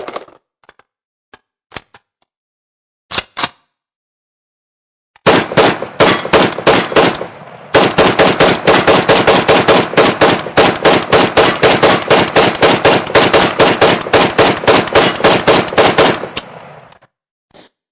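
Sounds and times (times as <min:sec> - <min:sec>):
fully automatic gunfire: 0:05.2 - 0:16.9
rifle firing: 0:05.2 - 0:16.9.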